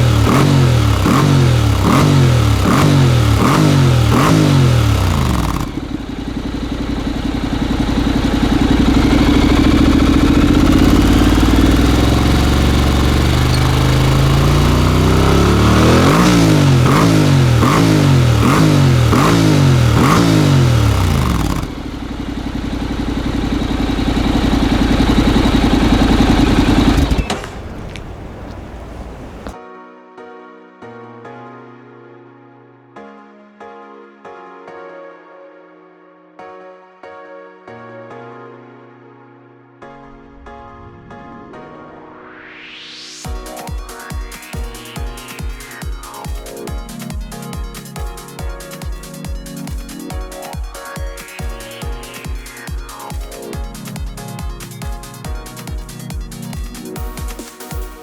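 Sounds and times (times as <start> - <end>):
motorcycle engine revving: 0.0 - 29.6.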